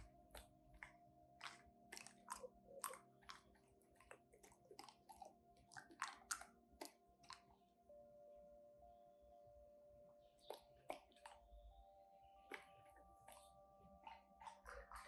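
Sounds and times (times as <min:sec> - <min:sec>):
dog crunching ice cubes: 0:00.0 - 0:07.4, 0:10.5 - 0:11.4, 0:12.5 - 0:15.0.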